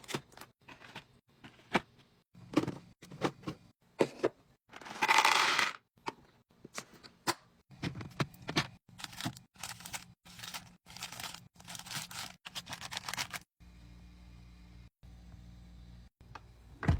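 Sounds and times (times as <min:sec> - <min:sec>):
items rustling and scraping: 0:00.0 - 0:13.5.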